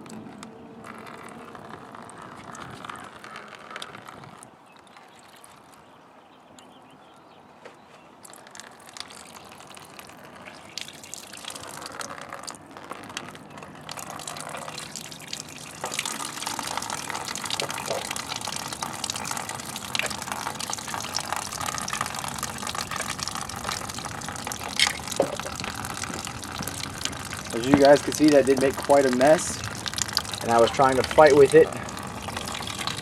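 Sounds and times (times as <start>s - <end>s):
coolant pouring and splattering: 8.2s - 33.0s.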